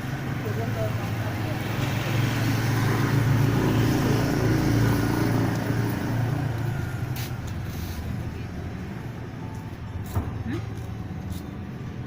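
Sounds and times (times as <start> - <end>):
vehicle engine passing: 0.0 - 9.3.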